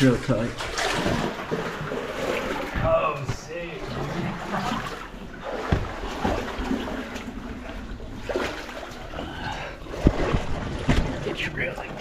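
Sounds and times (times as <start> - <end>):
soft knocks: 5.6 - 6.4.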